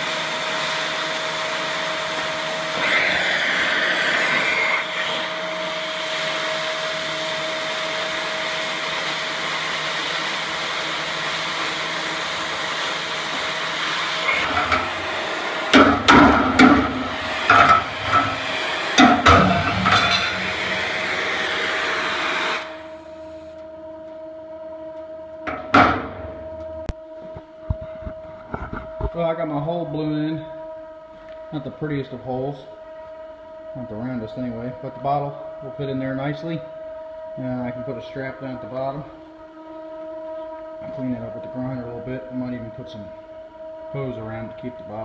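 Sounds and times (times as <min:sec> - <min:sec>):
cutting torch hissing: 0:00.0 - 0:23.5
metal clanks and knocks: 0:19.0 - 0:20.5, 0:25.5 - 0:26.9.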